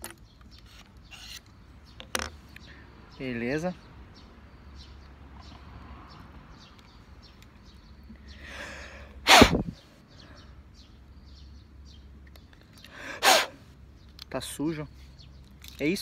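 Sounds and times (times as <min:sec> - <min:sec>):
person drawing in breath: 0:08.3 - 0:09.2
person sneezing: 0:13.2 - 0:13.6.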